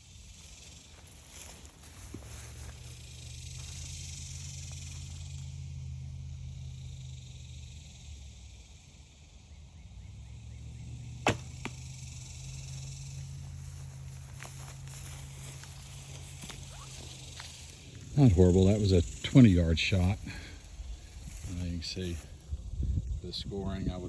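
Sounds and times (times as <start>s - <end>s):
arrow striking target: 11.2s - 11.9s
bow string snap: 11.2s - 11.9s.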